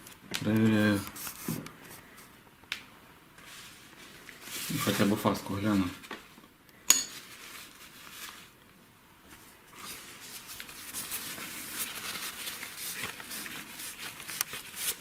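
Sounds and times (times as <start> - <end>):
faint handling clicks and rustling: 7.2 - 15.0.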